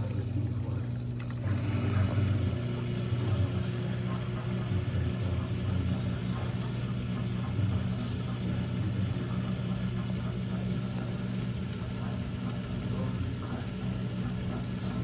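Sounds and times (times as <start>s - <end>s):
drain pump humming: 0.0s - 15.0s.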